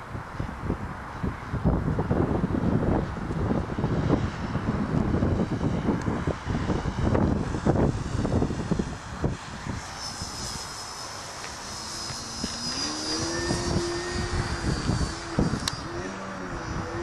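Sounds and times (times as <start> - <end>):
model airplane engine and propeller: 0.0 - 17.0
wind buffeting microphone: 0.0 - 17.0.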